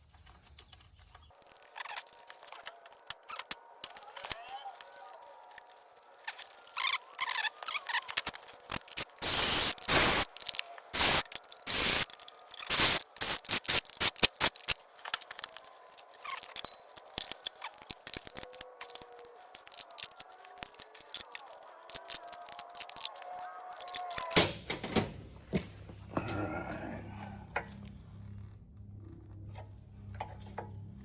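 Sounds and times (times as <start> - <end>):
hand ratchet clicking: 7.7 - 15.6.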